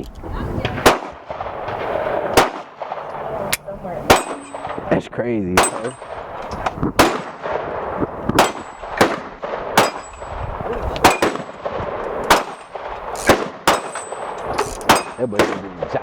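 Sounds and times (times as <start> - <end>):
gunshots: 0.6 - 16.0
bullets ringing on steel target: 4.1 - 4.8, 9.8 - 10.3, 14.9 - 15.5.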